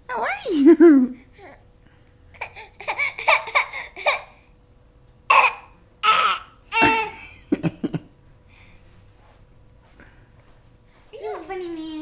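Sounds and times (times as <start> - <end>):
baby laughing squeals: 2.8 - 4.4, 5.3 - 7.2
baby babbling: 5.3 - 7.1.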